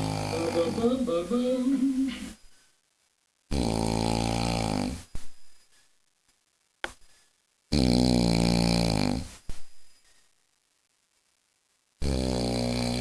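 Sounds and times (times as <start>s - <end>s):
man snoring loudly: 0.0s - 1.0s, 3.5s - 5.1s, 7.7s - 9.3s, 12.0s - 13.0s.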